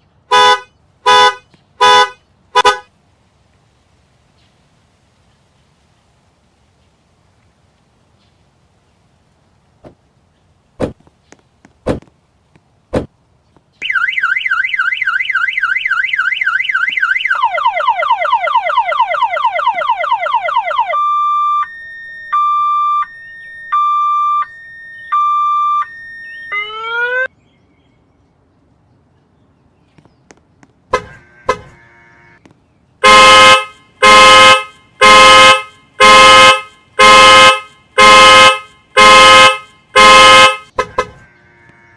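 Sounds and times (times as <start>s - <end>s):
car horn honking: 0.3s - 2.9s, 21.0s - 27.3s, 30.9s - 32.4s, 33.0s - 41.9s
car alarm siren warbling: 13.8s - 27.3s.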